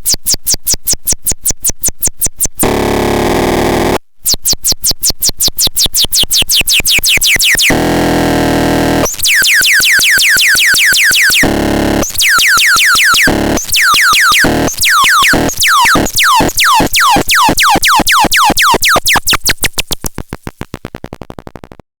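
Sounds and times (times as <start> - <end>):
synthesizer zaps sweeping down: 6.8 - 21.8.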